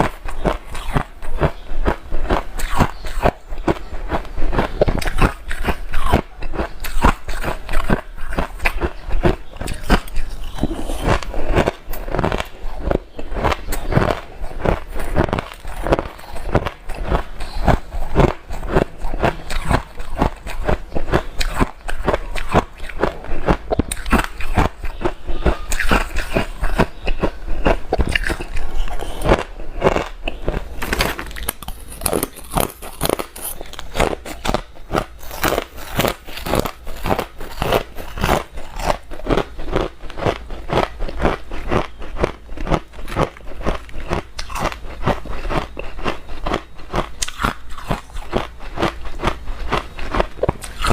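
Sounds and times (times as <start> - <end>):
person chewing ice cubes: 0.0 - 50.9.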